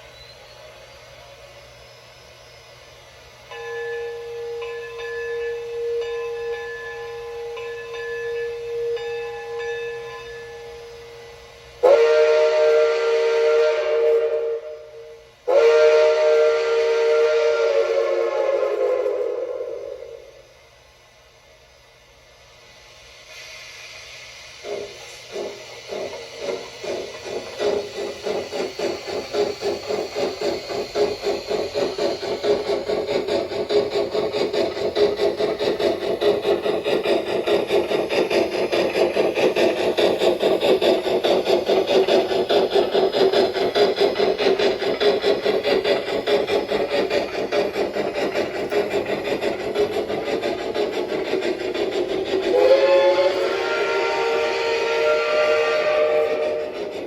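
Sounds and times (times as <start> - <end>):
steam whistle blast: 3.5 - 20.4, 24.6 - 33.2, 52.2 - 57.0.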